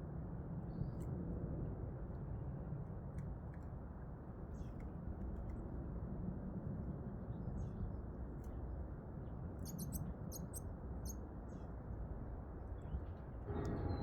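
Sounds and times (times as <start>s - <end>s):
small birds chirping: 9.6s - 11.7s.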